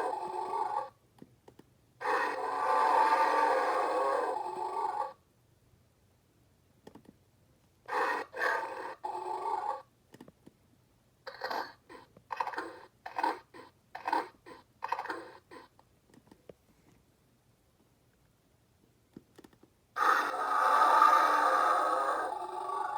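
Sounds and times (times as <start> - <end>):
electronic dinosaur roar: 0.0 - 0.9, 2.0 - 5.2, 7.9 - 9.8, 20.0 - 22.9
toy click: 14.8 - 15.3.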